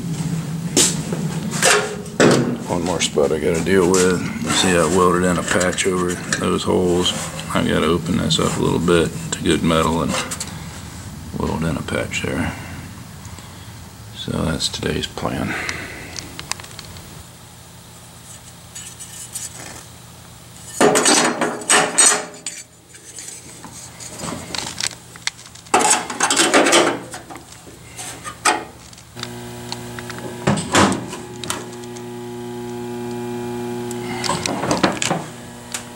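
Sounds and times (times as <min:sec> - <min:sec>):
low electrical hum: 0:00.0 - 0:35.9
metal tools clattering: 0:25.7 - 0:27.2.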